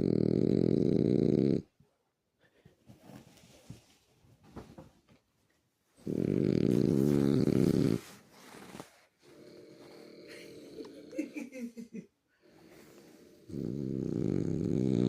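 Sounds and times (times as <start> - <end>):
dog snoring: 0.0 - 1.7, 6.0 - 11.2, 12.6 - 15.0.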